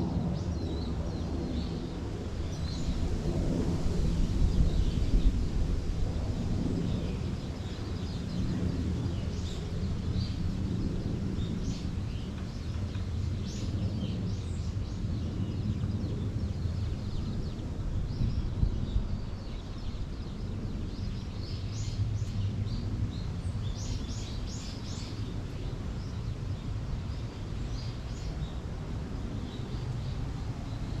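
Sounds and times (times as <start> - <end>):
steady low rumble: 0.0 - 31.0
songbirds chirping: 6.7 - 31.0.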